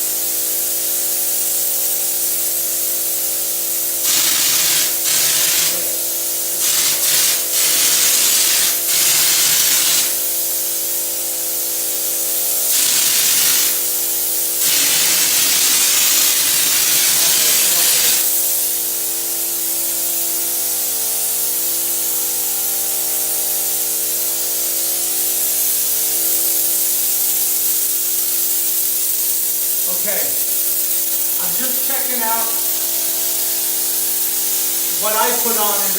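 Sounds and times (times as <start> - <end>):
spray gun hissing: 0.0 - 35.9.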